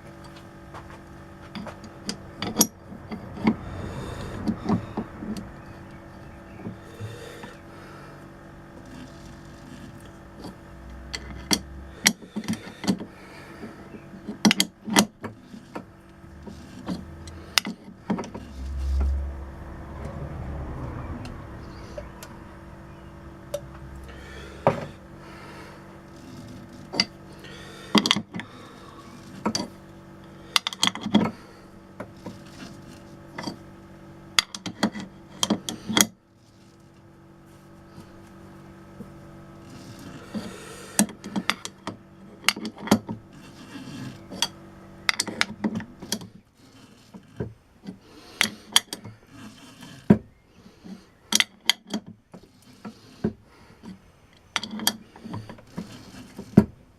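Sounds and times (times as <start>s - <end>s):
lathe motor humming: 0.3s - 14.4s.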